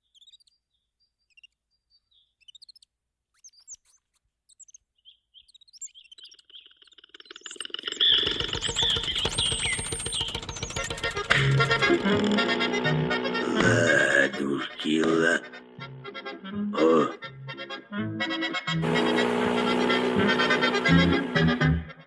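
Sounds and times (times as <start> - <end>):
short bird-like chirps: 0.0 - 10.8
fast rattling clatter with whistling: 6.6 - 12.8.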